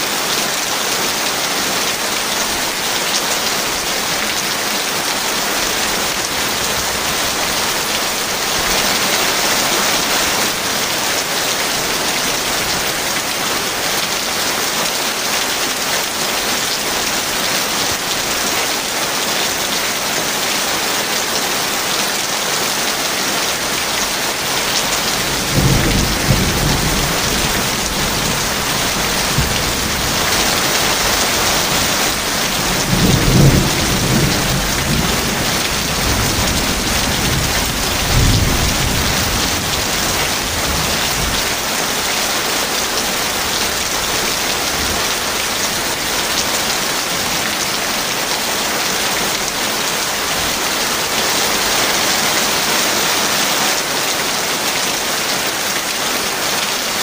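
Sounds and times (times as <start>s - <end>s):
heavy rain falling: 0.0s - 57.0s
deep thunder rumbling: 24.9s - 41.4s.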